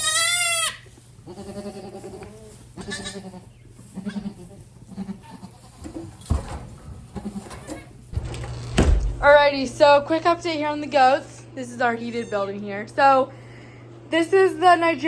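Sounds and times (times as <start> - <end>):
goats bleating: 0.0 - 5.9, 7.2 - 7.9.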